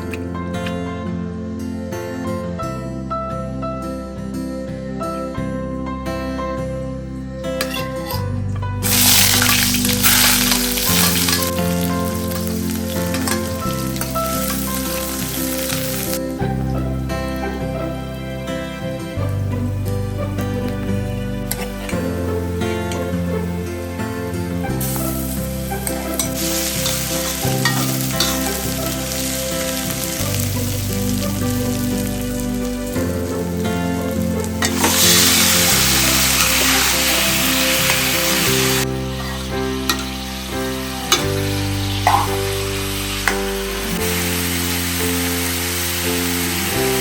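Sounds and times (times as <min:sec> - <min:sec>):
soft background music: 0:00.0 - 0:47.0
food sizzling in a pan: 0:08.8 - 0:18.2, 0:21.5 - 0:47.0
utensil clinking against pan: 0:12.3 - 0:14.7, 0:42.0 - 0:42.5.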